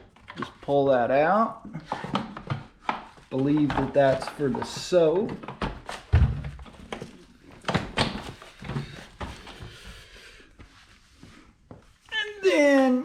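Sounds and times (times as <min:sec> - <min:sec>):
plastic and metal parts knocking: 0:01.8 - 0:09.0.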